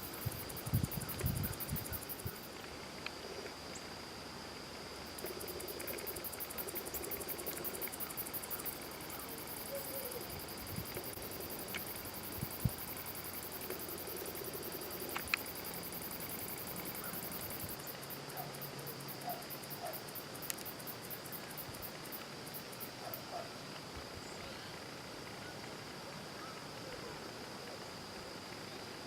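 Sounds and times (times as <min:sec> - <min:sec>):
pulsing high insect trill: 0:00.0 - 0:02.6, 0:03.6 - 0:23.5
cricket-like drone: 0:00.0 - 0:29.0.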